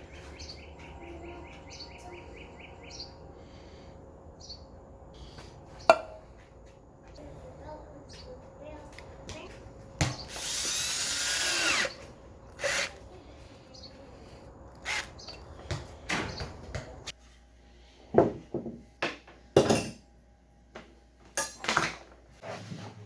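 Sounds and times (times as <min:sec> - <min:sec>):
power tool running: 0:10.2 - 0:13.0, 0:14.8 - 0:15.2.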